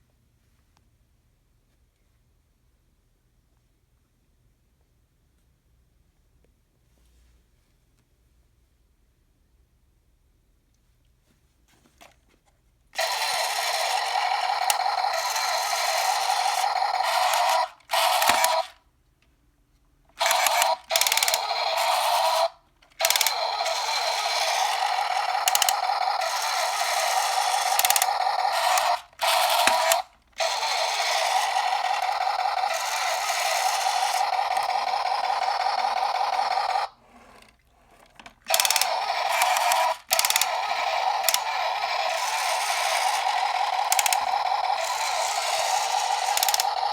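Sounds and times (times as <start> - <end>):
toy motor whirring rattle: 13.0 - 18.8, 20.2 - 46.9.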